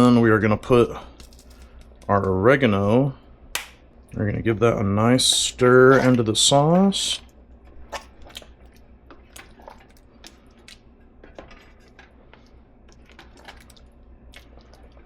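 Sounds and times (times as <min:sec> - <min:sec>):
sauce simmering: 0:04.7 - 0:15.0
spoon scraping pot: 0:05.2 - 0:07.1.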